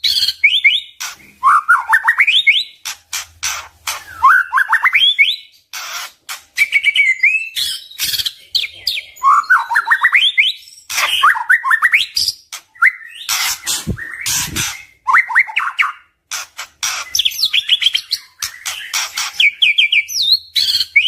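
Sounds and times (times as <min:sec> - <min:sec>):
bird singing whistled notes: 0:12.8 - 0:16.0, 0:17.1 - 0:21.0
harsh scratchy bird notes: 0:13.1 - 0:15.0.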